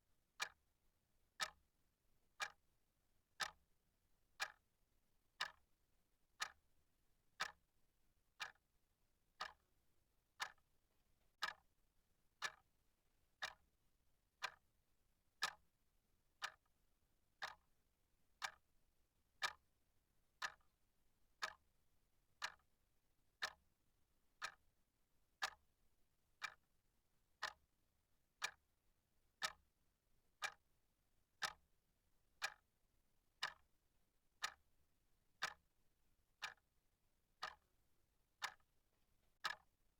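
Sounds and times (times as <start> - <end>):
clock ticking: 1.4 - 1.6, 2.4 - 2.6, 3.4 - 3.6, 4.4 - 4.6, 5.4 - 5.6, 6.4 - 6.6, 7.4 - 7.6, 8.4 - 8.6, 9.4 - 9.6, 10.4 - 10.6, 11.4 - 11.6, 12.4 - 12.6, 13.4 - 13.6, 14.4 - 14.6, 15.4 - 15.6, 16.4 - 16.6, 17.4 - 17.6, 18.4 - 18.6, 19.4 - 19.6, 20.4 - 20.7, 21.4 - 21.6, 22.4 - 22.6, 23.4 - 23.6, 24.4 - 24.6, 25.4 - 25.6, 26.4 - 26.6, 27.4 - 27.6, 28.4 - 28.6, 29.4 - 29.6, 30.4 - 30.6, 31.4 - 31.6, 32.4 - 32.6, 33.4 - 33.7, 34.4 - 34.6, 35.4 - 35.6, 36.4 - 36.6, 37.4 - 37.7, 38.4 - 38.7, 39.4 - 39.7.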